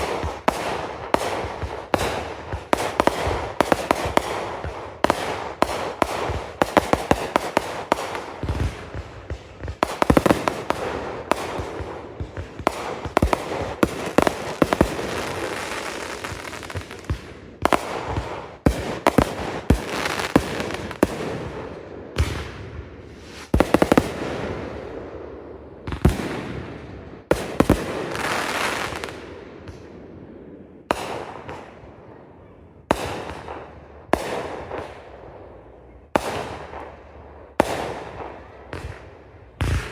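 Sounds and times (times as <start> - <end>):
fireworks crackling: 0.0 - 25.0, 27.3 - 29.2.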